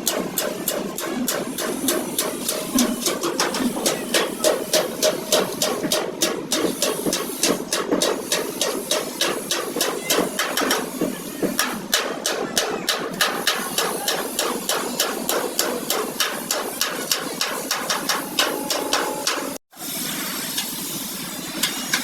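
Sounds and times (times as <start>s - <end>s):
hammer striking rhythmically: 11.6s - 19.6s.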